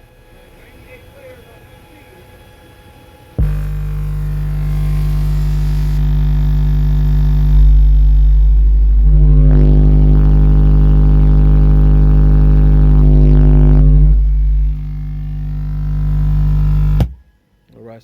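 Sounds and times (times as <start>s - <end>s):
subwoofer bass test tone: 3.4s - 17.3s.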